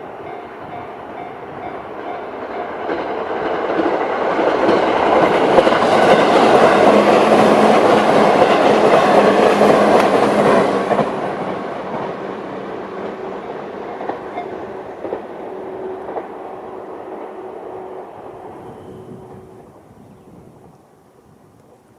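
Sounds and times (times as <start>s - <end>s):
train wheels rushing on rail: 0.0s - 20.8s.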